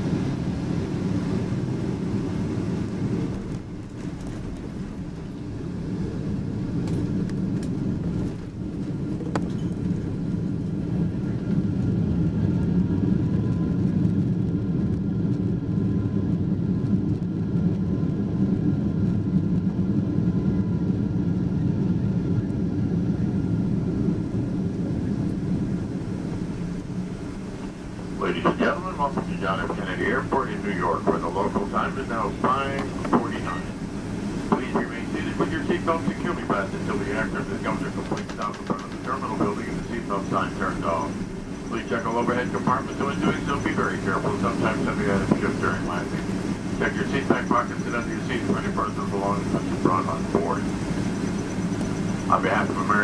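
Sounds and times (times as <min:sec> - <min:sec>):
airplane cabin engine rumble: 0:00.0 - 0:53.0
faint high whine: 0:21.5 - 0:53.0.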